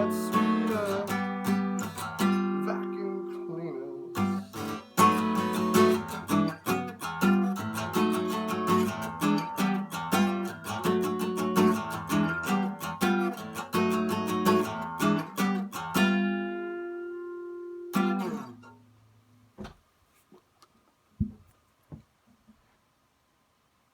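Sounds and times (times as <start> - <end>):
acoustic guitar strumming: 0.0 - 18.9.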